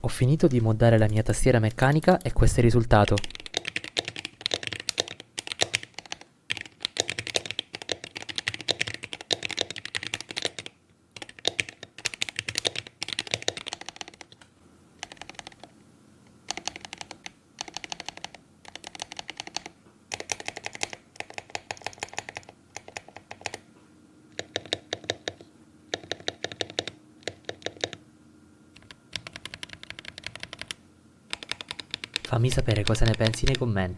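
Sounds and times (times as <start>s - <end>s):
typing on mechanical keyboard: 0.4s - 15.7s, 16.5s - 23.6s, 24.3s - 28.0s, 28.7s - 33.6s.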